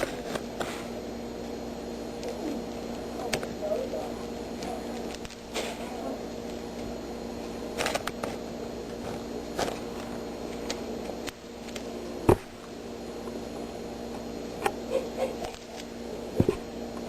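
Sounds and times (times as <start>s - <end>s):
electrical hum: 0.0s - 17.0s.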